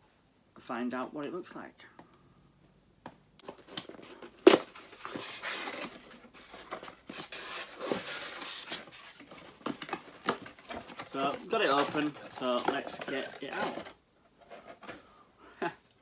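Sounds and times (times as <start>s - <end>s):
cardboard box snapping: 3.4s - 5.9s
packaging rustling and tearing: 3.4s - 15.0s.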